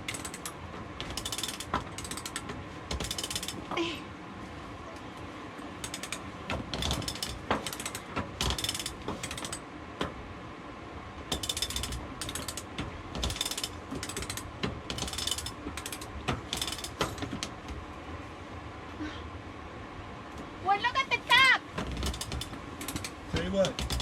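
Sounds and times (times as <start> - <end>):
winch ratcheting clicks: 0.0 - 3.6, 5.8 - 9.6, 11.3 - 17.5, 21.9 - 24.0.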